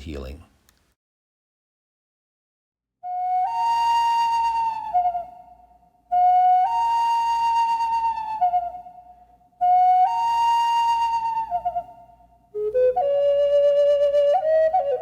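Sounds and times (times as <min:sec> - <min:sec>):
solo flute playing: 0:03.0 - 0:15.0.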